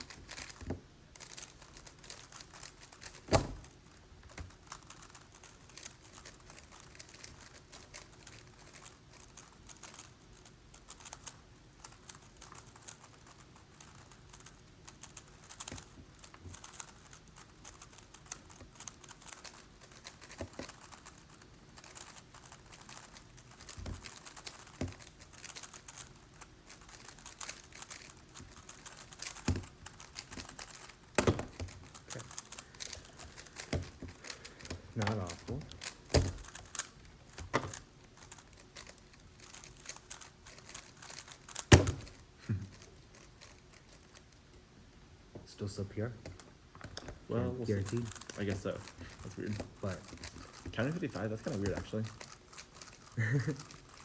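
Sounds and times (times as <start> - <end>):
plastic puzzle clicking: 0.0 - 44.3, 46.2 - 54.0.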